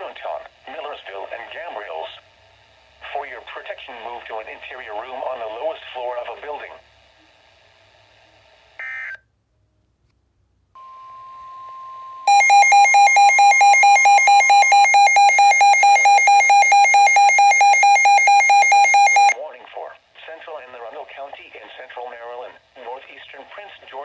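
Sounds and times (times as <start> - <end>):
data burst: 12.3 - 19.4
rapid electronic alarm beeping: 12.3 - 19.4
steady alert tone: 12.3 - 19.4.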